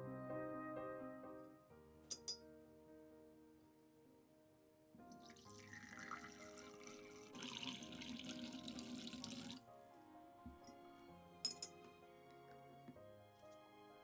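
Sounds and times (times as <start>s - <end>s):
soft background music: 0.0s - 14.0s
water running: 5.1s - 9.6s.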